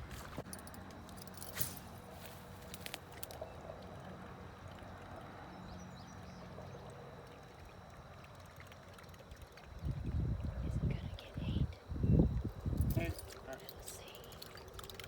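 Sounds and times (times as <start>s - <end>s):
faint outdoor hiss: 0.0s - 15.0s
low irregular rumbling: 9.4s - 14.2s.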